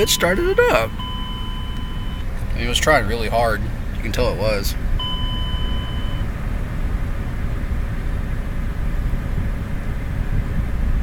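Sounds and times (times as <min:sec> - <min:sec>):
electronic beep: 0:00.0 - 0:02.2, 0:05.0 - 0:06.2
car engine idling: 0:00.0 - 0:11.0.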